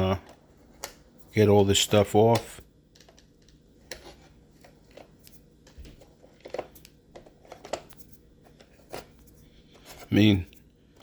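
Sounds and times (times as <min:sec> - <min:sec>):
plastic parts clicking and rustling: 0:01.7 - 0:10.1.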